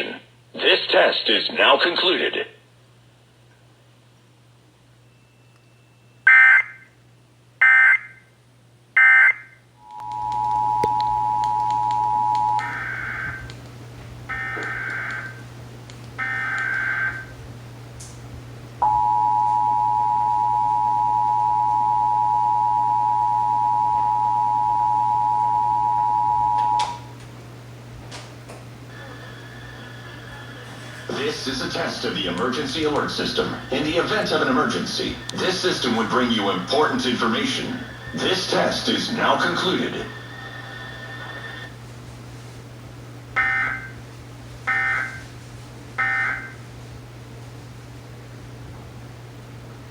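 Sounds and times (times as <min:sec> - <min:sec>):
low mains hum: 0:00.0 - 0:49.9
two-tone attention signal: 0:09.8 - 0:13.4, 0:18.8 - 0:27.0.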